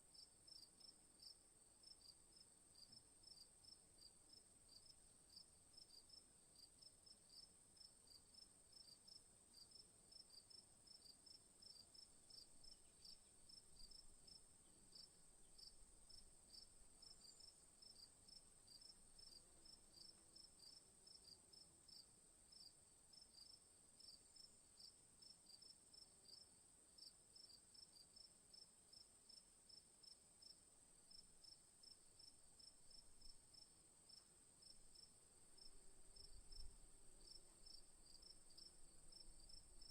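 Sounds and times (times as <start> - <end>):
crickets chirping: 7.3 - 24.9, 28.2 - 39.9.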